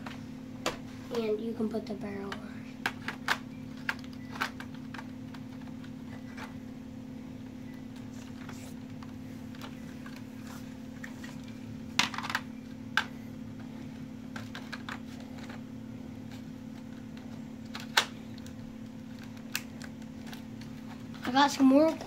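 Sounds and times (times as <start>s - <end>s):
steady low hum: 0.0s - 22.0s
sharp plastic snaps: 17.6s - 20.4s.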